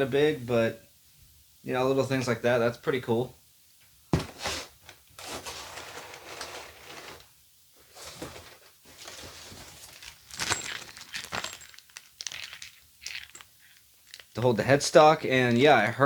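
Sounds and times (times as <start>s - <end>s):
packaging rustling: 4.2s - 14.5s.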